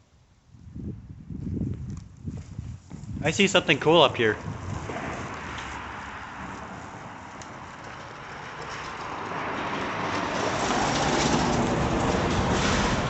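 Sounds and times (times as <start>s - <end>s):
passing road traffic: 3.2s - 13.0s.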